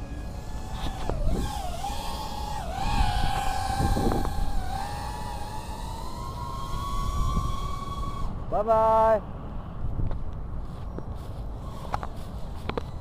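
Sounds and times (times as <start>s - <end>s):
wind rumble on microphone: 0.0s - 8.6s, 9.8s - 13.0s
quadcopter motors whining: 0.0s - 9.0s, 11.6s - 13.0s.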